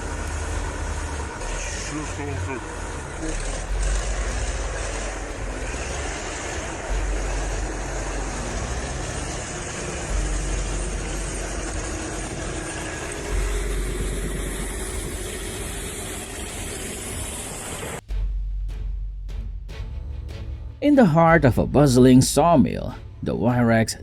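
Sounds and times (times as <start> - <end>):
heavy vehicle engine surging: 0.0 - 18.0.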